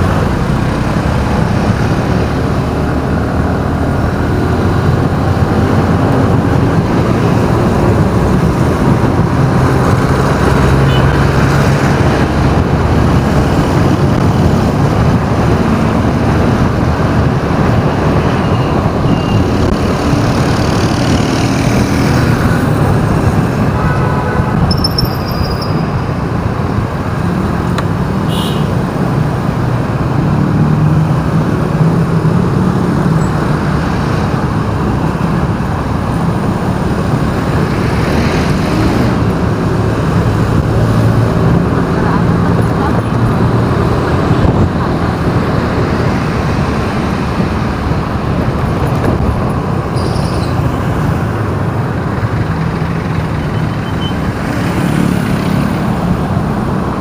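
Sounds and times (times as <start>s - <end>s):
engine and road noise: 0.0s - 57.0s
brief high squeak: 24.7s - 25.8s, 50.0s - 50.6s.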